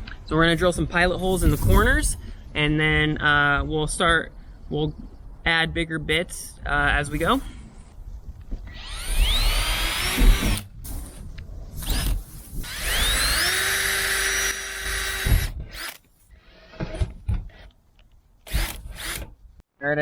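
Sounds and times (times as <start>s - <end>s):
power drill boring through metal: 8.7s - 10.6s, 11.8s - 16.0s, 18.5s - 19.3s.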